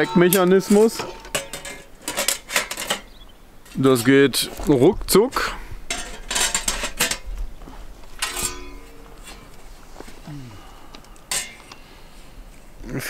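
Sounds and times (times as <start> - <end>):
metal parts clanking: 0.0 - 4.4, 5.3 - 7.4, 8.1 - 9.7, 11.1 - 11.8.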